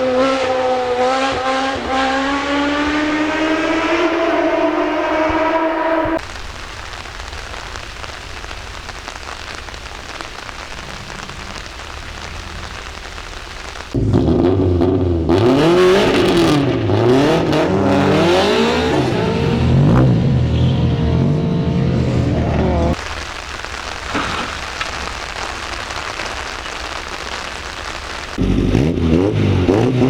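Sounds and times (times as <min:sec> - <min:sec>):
racing car engine revving: 0:00.0 - 0:06.2, 0:14.0 - 0:23.0, 0:28.4 - 0:30.0
steady hiss: 0:00.7 - 0:14.0, 0:22.0 - 0:28.4.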